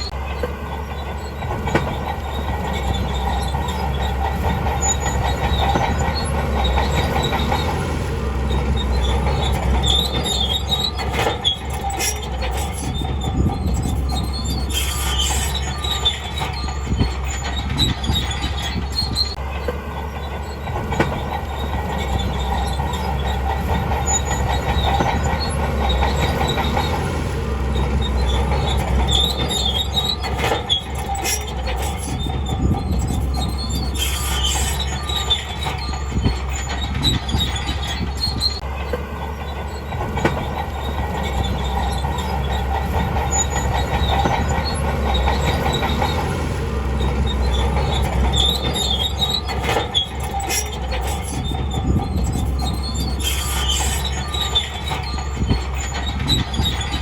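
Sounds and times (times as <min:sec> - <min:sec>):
bulldozer engine drone: 0:00.0 - 0:57.0
bulldozer tracks squealing and clanking: 0:00.0 - 0:57.0.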